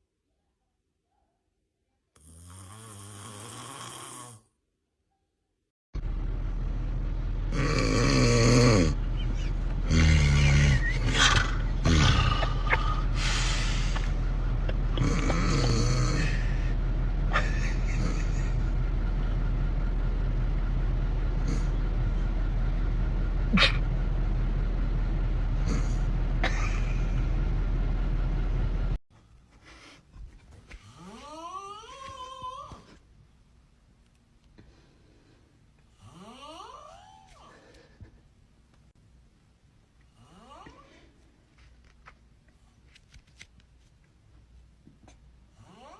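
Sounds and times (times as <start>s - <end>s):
loud rough snores: 2.2s - 4.6s, 7.5s - 9.0s, 9.8s - 14.0s, 14.9s - 16.7s, 21.4s - 21.8s, 25.6s - 26.1s, 36.0s - 36.9s, 40.2s - 40.8s, 45.6s - 45.9s
low hum and hiss: 32.1s - 45.7s.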